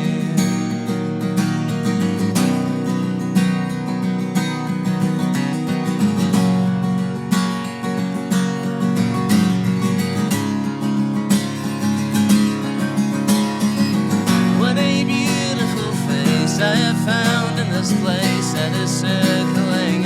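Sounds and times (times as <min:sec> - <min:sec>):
acoustic guitar strumming: 0:00.0 - 0:20.0
person singing with wavering pitch: 0:14.4 - 0:20.0.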